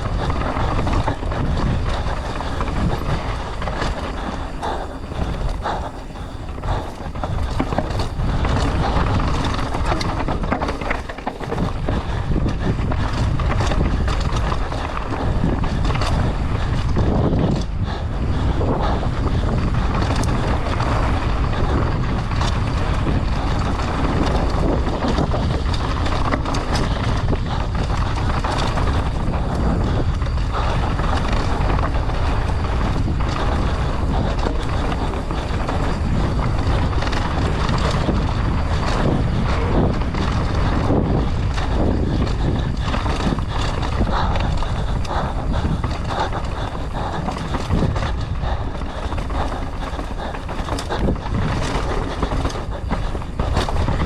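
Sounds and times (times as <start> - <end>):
wind rushing over microphone: 0.0 - 54.0
bike knocks and rattles: 0.2 - 17.6, 32.7 - 54.0.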